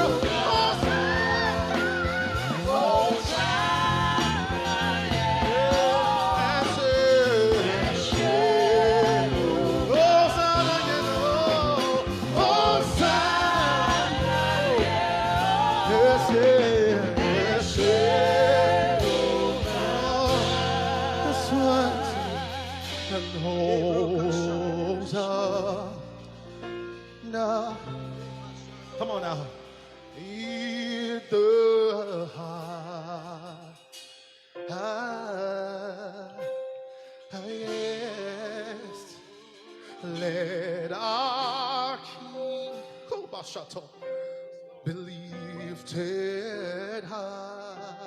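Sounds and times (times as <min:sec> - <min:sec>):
person singing with vibrato: 0:00.0 - 0:26.2.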